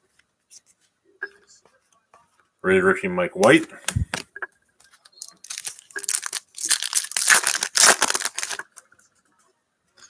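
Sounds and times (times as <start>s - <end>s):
foil wrapper crinkling and tearing: 5.2s - 8.8s.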